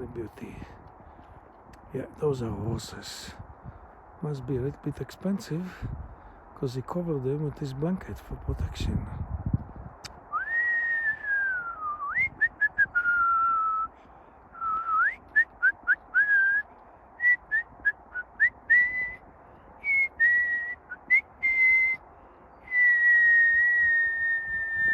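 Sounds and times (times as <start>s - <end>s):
person whistling a tune: 10.3s - 13.9s, 14.6s - 19.2s, 19.8s - 22.0s, 22.7s - 24.9s.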